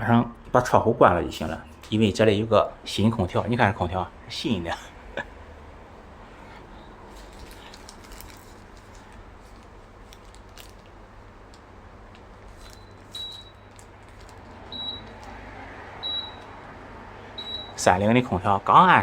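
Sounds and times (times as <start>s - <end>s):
air conditioner beeping: 0.0s - 5.0s, 11.0s - 19.0s
low steady background hum: 0.0s - 19.0s.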